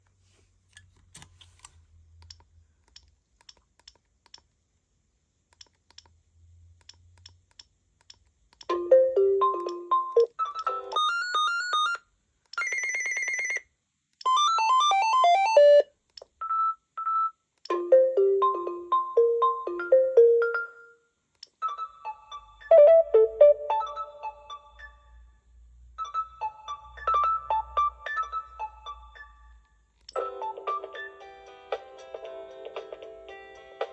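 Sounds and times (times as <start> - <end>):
phone ringtones: 12.6 - 13.7.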